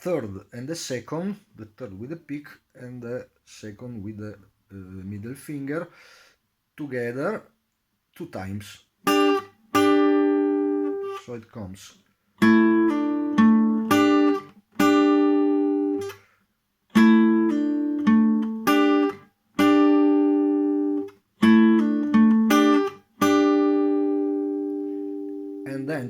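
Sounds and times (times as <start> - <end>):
guitar riff: 9.0 - 11.4, 12.4 - 16.2, 16.9 - 26.0.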